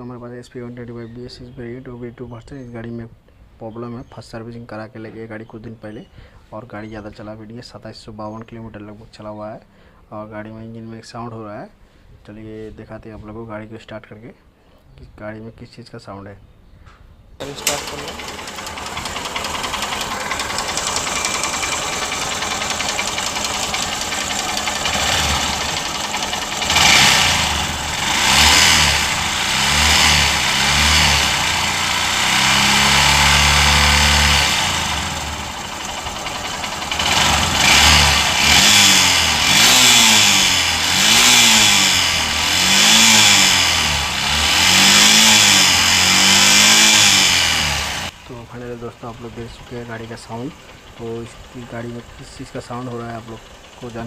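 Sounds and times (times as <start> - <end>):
motorcycle engine idling and revving: 17.4 - 54.0.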